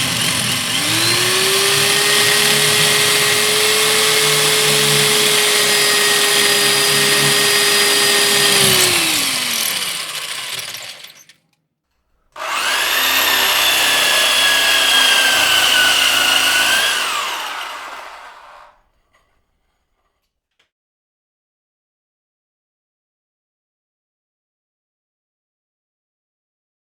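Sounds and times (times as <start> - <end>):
electric drill motor whining: 0.0 - 11.4, 12.4 - 18.8.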